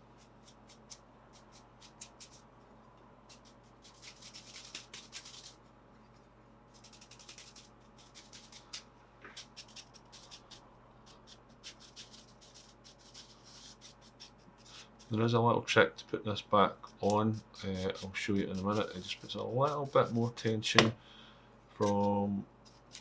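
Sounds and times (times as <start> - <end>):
brush scrubbing: 16.8 - 20.7.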